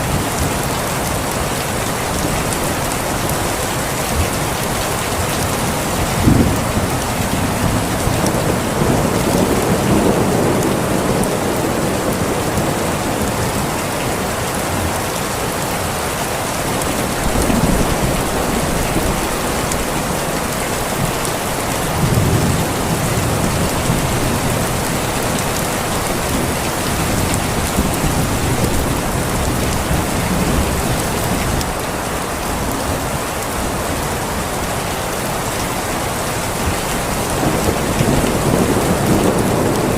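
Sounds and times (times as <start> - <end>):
steady rain falling: 0.0 - 39.9
thunder rumbling: 4.1 - 13.7, 16.5 - 31.9, 36.5 - 39.9.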